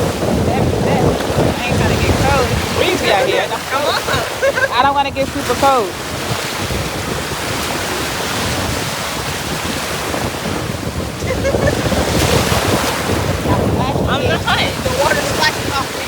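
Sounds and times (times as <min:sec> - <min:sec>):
ocean surf breaking: 0:00.0 - 0:16.0
wind on microphone: 0:00.0 - 0:16.0.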